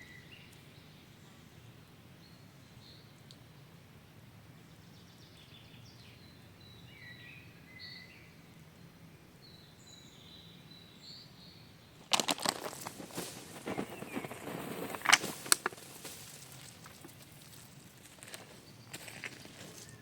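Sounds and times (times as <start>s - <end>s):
forest ambience: 0.0s - 20.0s
songbird chirps: 0.0s - 20.0s
crackling rustle: 12.0s - 20.0s.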